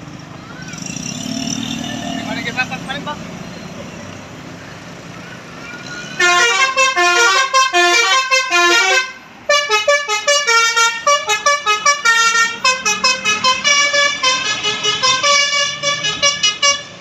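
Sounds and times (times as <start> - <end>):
musical bus air horn: 6.2 - 17.0.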